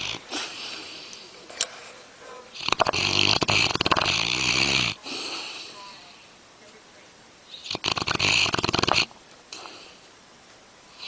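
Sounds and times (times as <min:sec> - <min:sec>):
dog snoring: 0:00.0 - 0:00.3, 0:02.5 - 0:05.6, 0:07.5 - 0:09.7.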